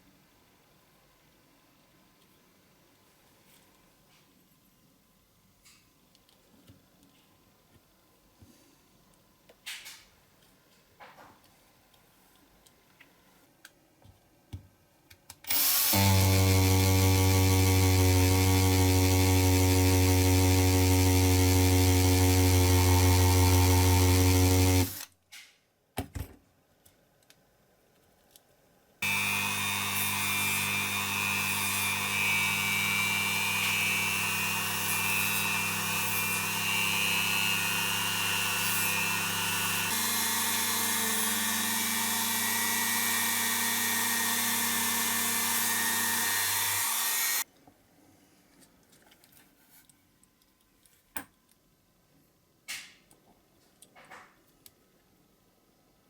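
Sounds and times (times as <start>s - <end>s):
electric power tool whining: 15.5s - 25.1s, 29.0s - 47.4s.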